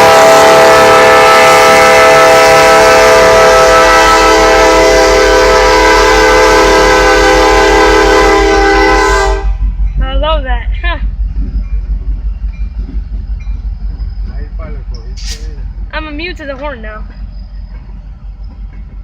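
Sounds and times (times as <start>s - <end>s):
locomotive air horn blast: 0.0s - 9.6s
train low rumble: 0.0s - 19.0s.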